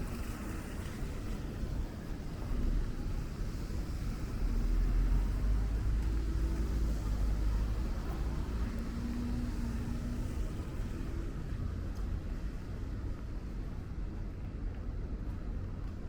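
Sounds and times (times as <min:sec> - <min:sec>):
faint engine hum: 0:00.0 - 0:16.0
low rumble of motor vehicles: 0:00.0 - 0:16.0.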